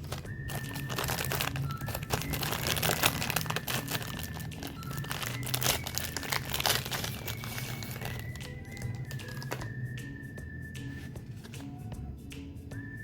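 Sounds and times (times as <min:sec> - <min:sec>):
crunching cookies: 0:00.0 - 0:09.9.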